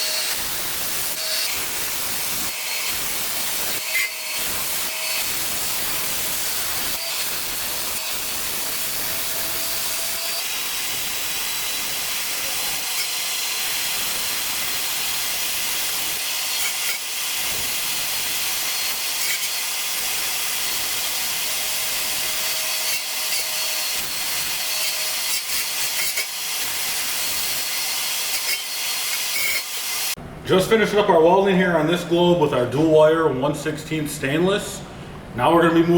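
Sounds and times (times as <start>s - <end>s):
laser welder hissing: 0.0s - 12.8s.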